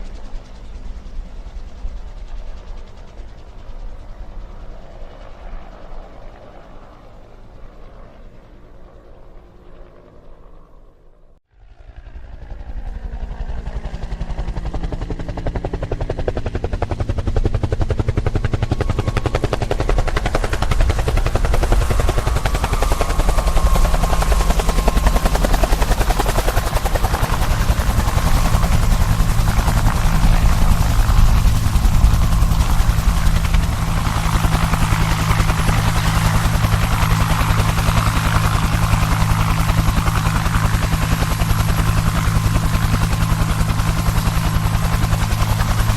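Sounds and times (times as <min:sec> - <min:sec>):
helicopter engine hum: 0:00.0 - 0:45.9
helicopter rotor chop: 0:11.6 - 0:45.9.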